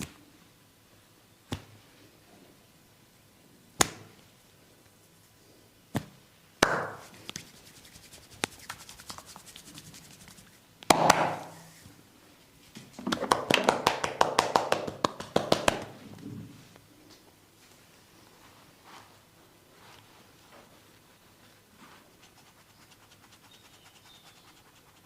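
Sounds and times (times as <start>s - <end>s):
hand slaps on body: 1.5s - 1.7s, 3.8s - 4.1s, 5.9s - 7.4s, 10.8s - 11.6s, 13.1s - 15.9s
fast chopping hand strikes: 6.0s - 7.1s, 10.9s - 11.6s.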